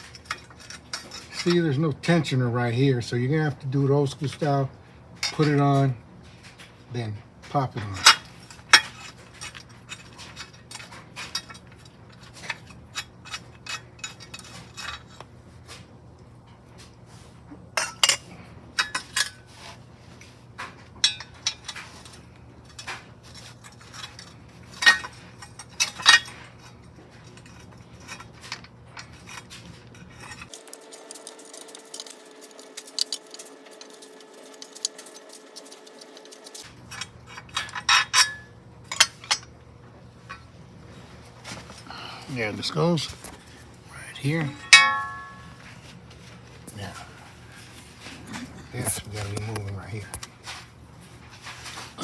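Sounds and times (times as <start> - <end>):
metal tools clinking: 0.0 - 1.8, 7.8 - 15.2, 21.0 - 39.5, 44.2 - 45.7
low steady hum: 21.0 - 51.9.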